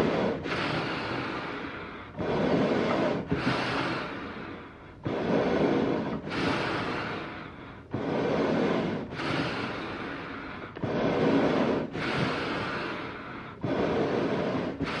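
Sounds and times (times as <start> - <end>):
heavy raspy animal breathing: 0.0 - 15.0.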